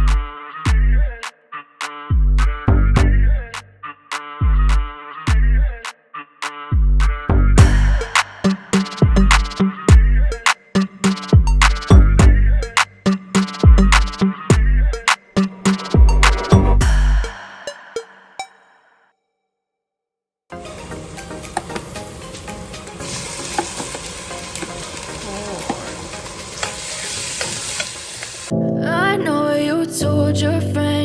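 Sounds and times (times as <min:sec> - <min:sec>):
hip-hop music: 0:00.0 - 0:18.6
food sizzling in a frying pan: 0:20.6 - 0:28.5.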